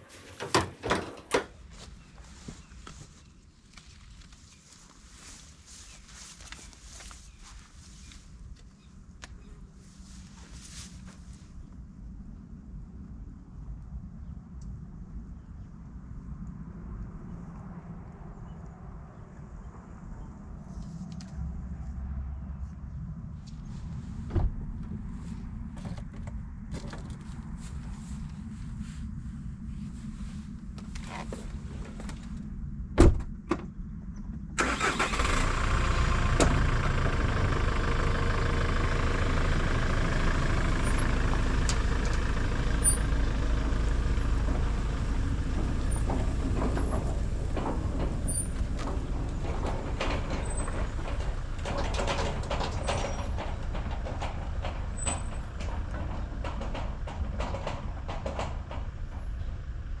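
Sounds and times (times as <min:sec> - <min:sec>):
stump grinder engine running: 0:34.6 - 0:55.0
ticks and clatter: 0:39.3 - 0:59.7.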